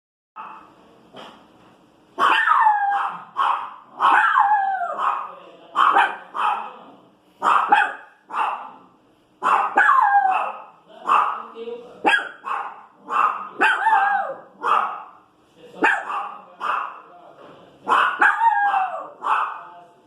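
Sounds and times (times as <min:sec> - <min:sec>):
small dog barking: 0:00.4 - 0:00.7, 0:02.2 - 0:06.8, 0:07.4 - 0:15.2, 0:15.8 - 0:17.1, 0:17.9 - 0:19.7.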